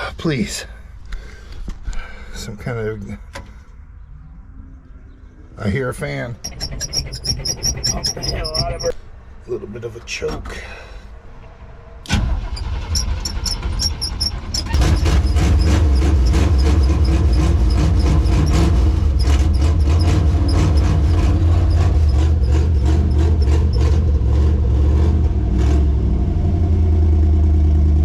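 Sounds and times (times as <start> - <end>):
starter cranking engine: 6.4 - 8.9, 12.1 - 24.1
pickup engine running: 12.3 - 25.4.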